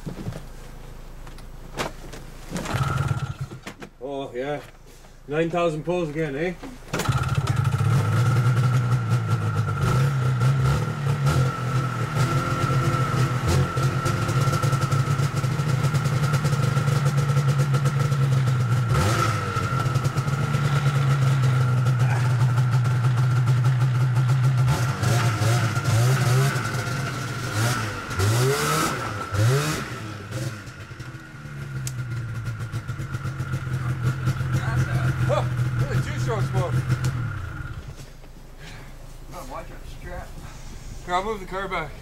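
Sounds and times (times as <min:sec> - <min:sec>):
engine pull start: 0:02.5 - 0:03.8, 0:06.8 - 0:09.4
snowmobile engine idling and revving: 0:02.6 - 0:03.6, 0:05.3 - 0:38.0, 0:38.6 - 0:42.0.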